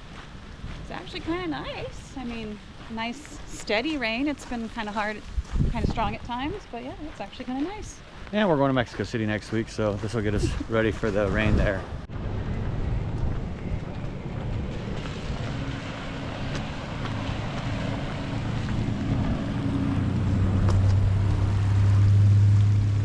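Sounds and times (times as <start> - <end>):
wind noise on microphone: 0.0 - 8.0, 9.3 - 23.0
low motor hum: 9.7 - 23.0
steady rain: 10.1 - 23.0.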